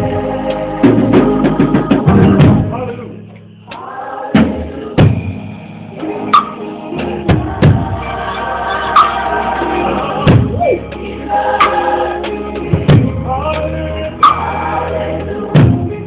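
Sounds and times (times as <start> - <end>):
praise music with drum kit: 0.0 - 16.0
loud drum hits: 0.8 - 3.0, 4.3 - 5.5, 7.3 - 8.1, 10.2 - 10.7, 12.8 - 13.3, 15.6 - 16.0.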